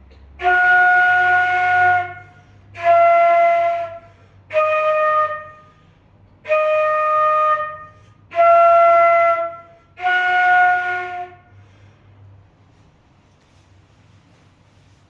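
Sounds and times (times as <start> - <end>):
woodwind held tones: 0.4 - 5.8, 6.4 - 11.6.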